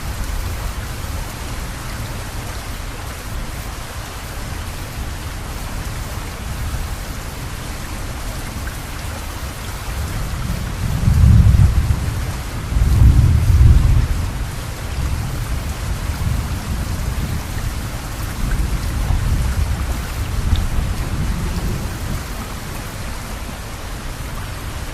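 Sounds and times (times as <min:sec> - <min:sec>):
steady rain: 0:00.0 - 0:24.9
thunder rumbling: 0:10.4 - 0:22.9.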